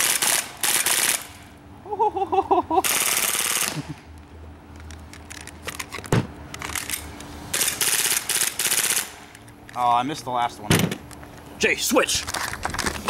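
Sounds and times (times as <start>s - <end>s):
airsoft pistol full-auto burst: 0.0s - 1.4s, 2.8s - 3.8s, 7.6s - 9.2s.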